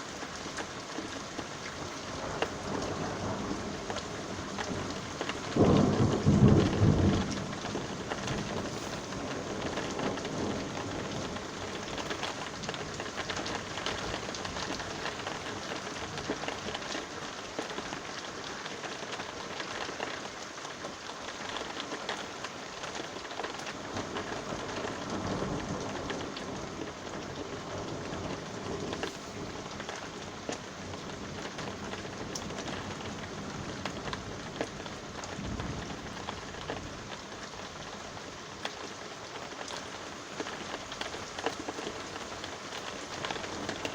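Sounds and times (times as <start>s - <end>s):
rain pattering on surfaces: 0.0s - 43.9s
low thunder rumbles: 2.1s - 15.3s, 24.0s - 38.0s.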